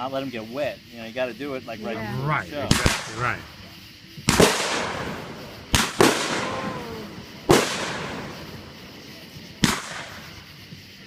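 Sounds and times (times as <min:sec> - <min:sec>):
fireworks booming: 0:02.1 - 0:10.9.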